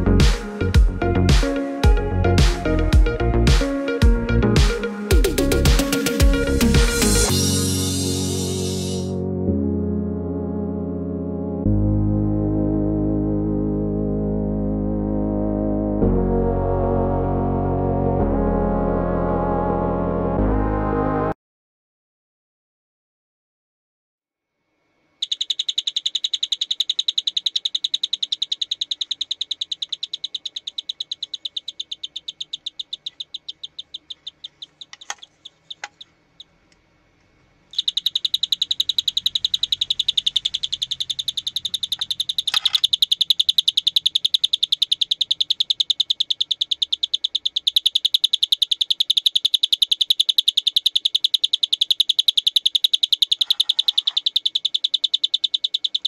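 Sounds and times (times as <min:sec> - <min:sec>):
electronic doorbell chirping trill: 0:04.7 - 0:09.1, 0:25.2 - 0:36.1, 0:37.8 - 0:56.0
sharp clicks: 0:25.2 - 0:36.1, 0:37.7 - 0:56.0.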